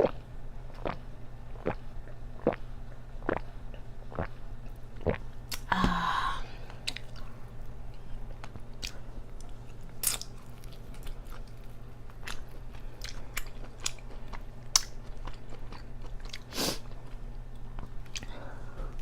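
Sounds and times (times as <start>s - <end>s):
steady low hum: 0.0s - 19.0s
crunchy chewing and biting: 8.5s - 18.3s.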